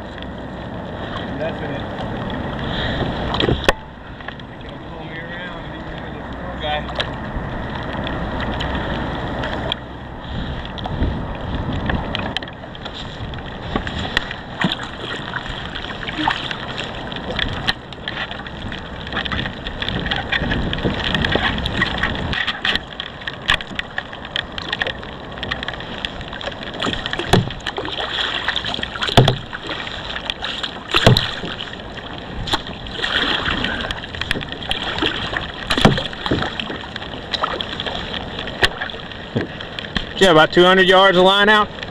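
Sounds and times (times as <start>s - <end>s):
water sloshing against hull: 0.0s - 41.9s
wind on microphone: 5.8s - 40.2s
louder thumps: 27.3s - 27.7s, 29.1s - 29.6s, 30.9s - 31.6s, 35.7s - 36.6s
knocks and clicks: 29.0s - 29.6s.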